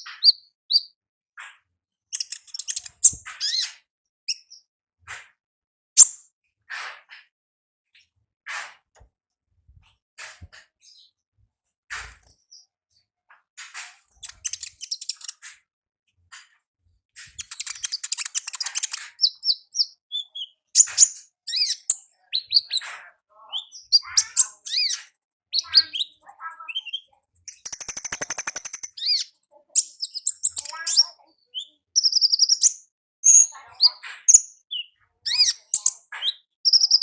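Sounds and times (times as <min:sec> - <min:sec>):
bird chirping and trilling: 0:25.6 - 0:33.5, 0:34.3 - 0:37.0.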